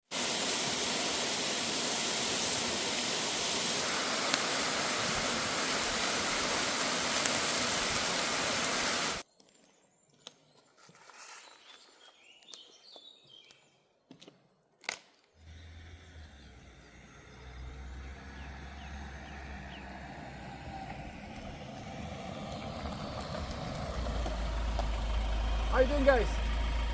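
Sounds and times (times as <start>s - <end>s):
waterfall rushing: 0.0s - 9.2s
low hum: 15.5s - 26.9s.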